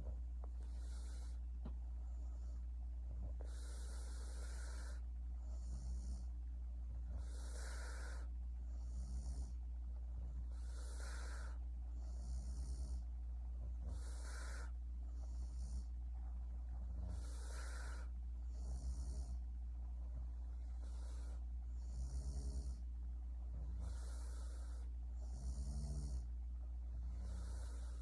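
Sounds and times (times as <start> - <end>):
steady low hum: 0.0 - 28.0
woman snoring softly: 3.2 - 9.6, 10.2 - 16.0, 16.8 - 19.4, 20.4 - 22.9, 23.5 - 26.3, 26.9 - 28.0.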